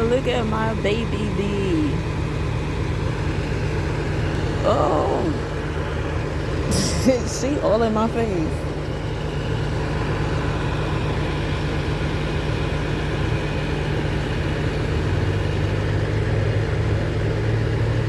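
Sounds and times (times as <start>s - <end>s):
engine idling hum: 0.0s - 18.0s.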